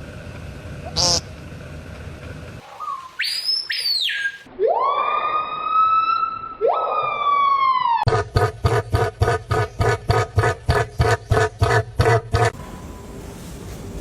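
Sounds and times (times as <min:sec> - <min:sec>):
bird siren-like calls: 0:02.6 - 0:08.1.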